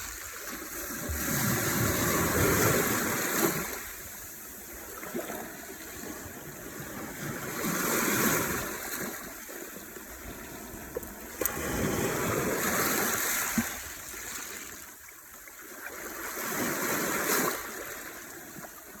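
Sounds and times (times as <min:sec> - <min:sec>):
waves washing onto shore: 0:00.0 - 0:15.0.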